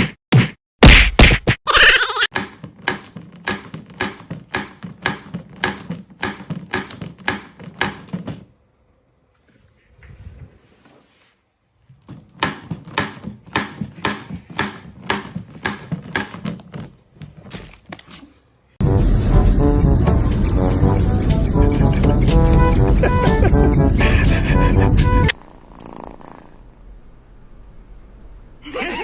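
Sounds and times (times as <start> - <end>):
sharp knocks: 2.3 - 8.5, 12.1 - 16.8.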